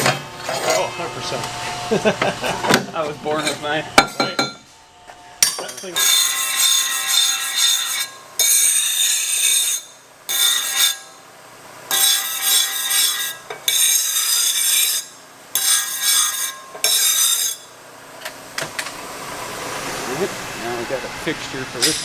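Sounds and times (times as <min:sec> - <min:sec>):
power tool grinding metal: 0:00.0 - 0:11.2, 0:11.9 - 0:17.8.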